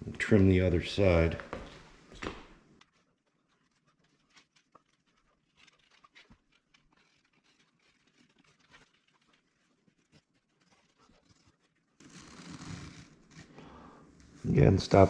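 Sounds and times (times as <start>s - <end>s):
razor blade slicing fabric: 12.0s - 13.5s.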